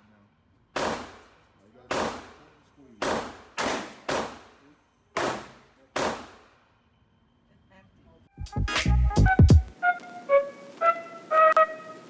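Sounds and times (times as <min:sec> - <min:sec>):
pistol shots: 0:00.8 - 0:06.6.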